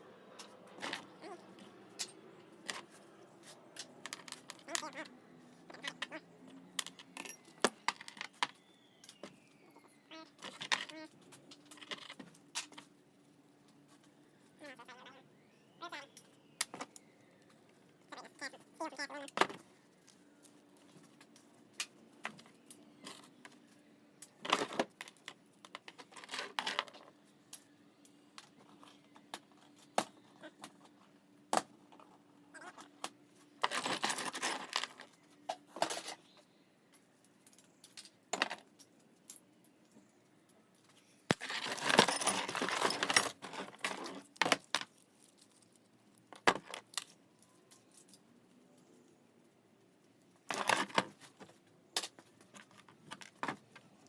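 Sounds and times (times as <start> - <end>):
scrap metal and tools clattering: 33.6 - 36.4, 41.3 - 44.4.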